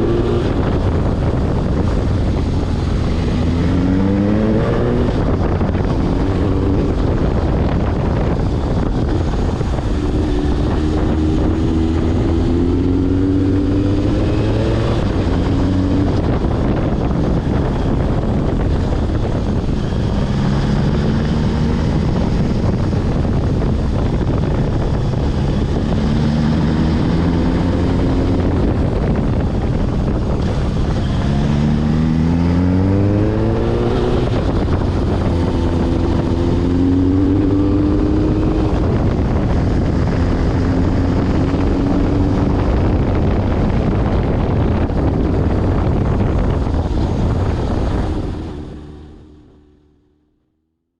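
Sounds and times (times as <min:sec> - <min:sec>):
motorcycle engine revving: 0:00.0 - 0:50.3
wind noise on microphone: 0:00.0 - 0:50.3.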